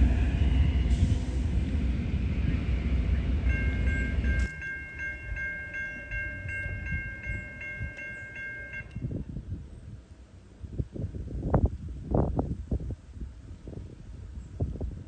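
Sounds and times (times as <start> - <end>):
train rumbling: 0.0 - 15.0
crossing warning bell dinging: 3.1 - 9.3.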